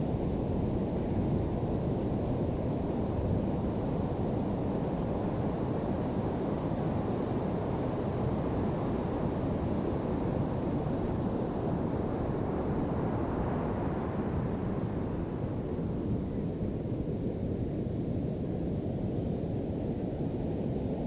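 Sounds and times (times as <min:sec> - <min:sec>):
wind buffeting the microphone: 0:00.0 - 0:21.0.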